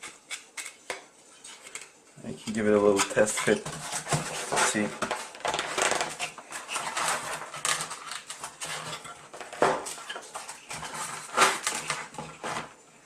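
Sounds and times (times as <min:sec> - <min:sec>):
wood scraping on foam: 0:02.5 - 0:12.7.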